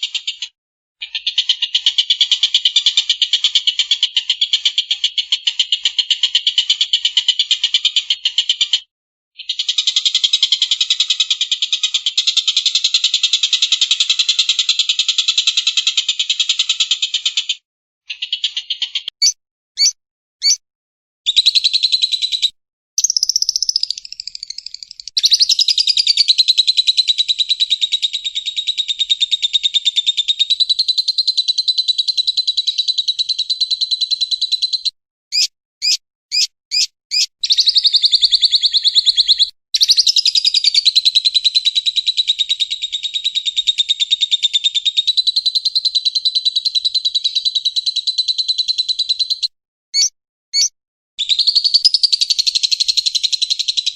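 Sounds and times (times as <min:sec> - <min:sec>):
bird trilling: 0:18.2 - 0:20.6, 0:21.3 - 0:29.4, 0:32.5 - 0:41.0, 0:49.2 - 0:53.9.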